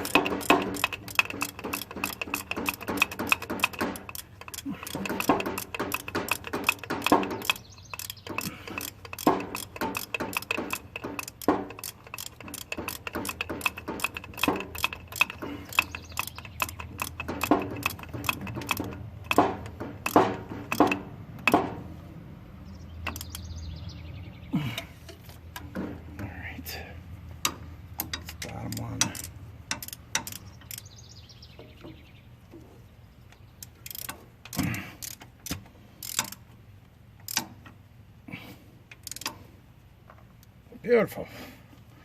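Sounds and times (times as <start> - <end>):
ratchet wrench clicking: 0.0 - 21.6, 23.0 - 23.5, 27.4 - 30.9, 33.6 - 36.5, 37.2 - 37.5, 38.9 - 39.4
metal tools knocking: 0.0 - 21.8.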